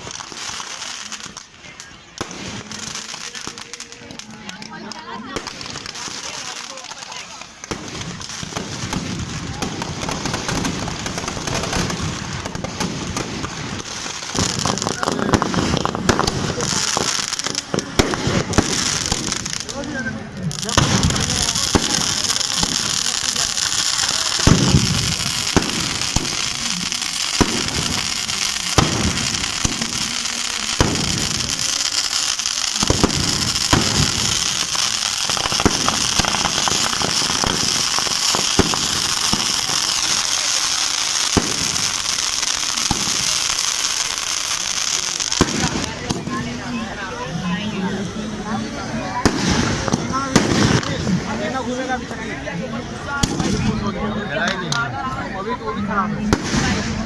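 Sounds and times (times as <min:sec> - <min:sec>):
firecrackers crackling: 0:00.0 - 0:57.0.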